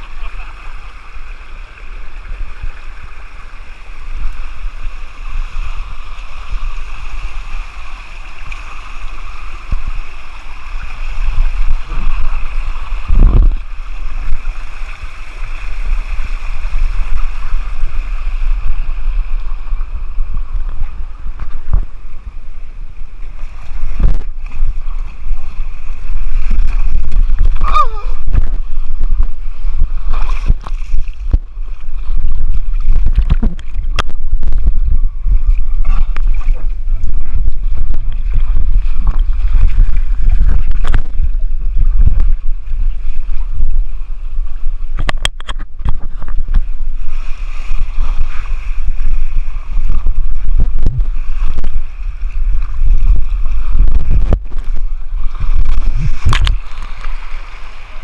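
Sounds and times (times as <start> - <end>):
rushing water on water slide: 0.0 - 58.0
wind rumble on microphone: 0.0 - 58.0
sharp knocks and splashes: 11.0 - 18.9, 29.2 - 34.8, 52.9 - 58.0.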